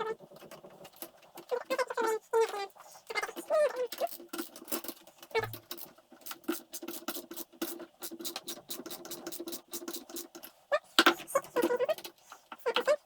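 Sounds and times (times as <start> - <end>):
hand tool rapid clicking: 3.9 - 10.5.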